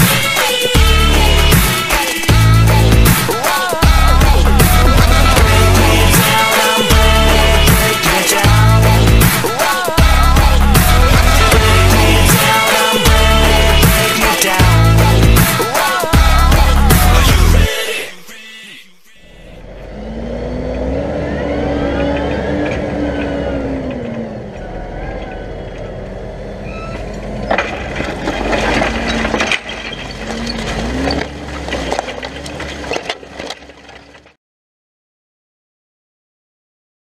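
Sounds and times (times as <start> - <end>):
tractor engine revving under load: 19.3 - 33.9
engine knocking and clattering: 27.0 - 34.4.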